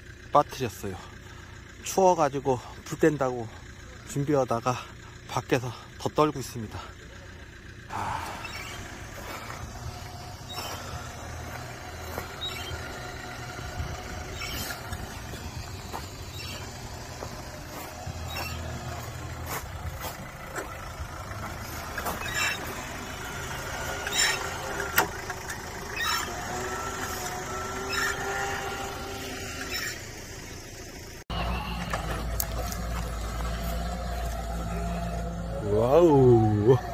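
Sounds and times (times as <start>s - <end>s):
excavator engine under load: 0.0s - 36.9s
hydraulic squeal: 8.0s - 19.2s, 21.6s - 30.2s, 31.3s - 36.9s.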